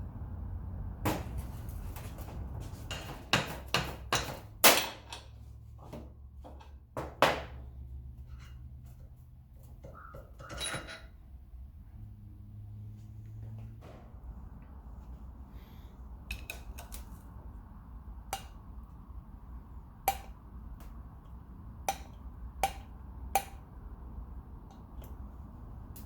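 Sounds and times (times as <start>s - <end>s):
low background rumble: 0.0s - 5.6s
metal tools clinking on workbench: 10.4s - 11.2s.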